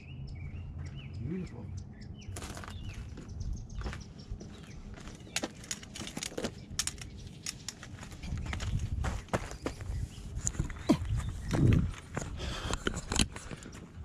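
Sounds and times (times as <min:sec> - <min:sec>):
bird chirp: 0:00.0 - 0:12.4
footsteps on a trail: 0:02.3 - 0:06.6, 0:07.3 - 0:14.0.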